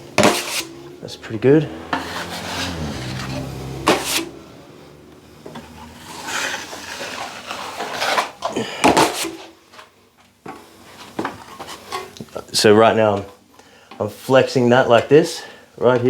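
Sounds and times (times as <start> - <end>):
blade scraping joint compound: 0.0 - 0.8, 1.8 - 4.4, 5.4 - 9.6.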